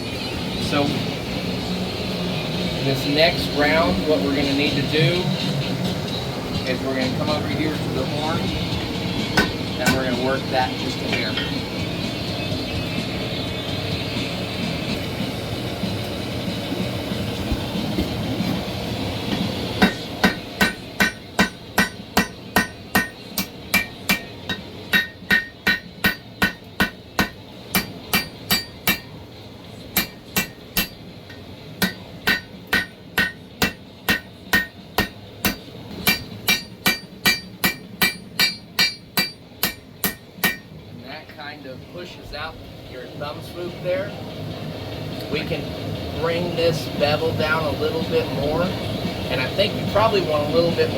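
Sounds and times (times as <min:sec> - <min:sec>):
hammer striking blade on anvil: 0:09.4 - 0:10.2, 0:19.3 - 0:29.2, 0:30.0 - 0:40.7.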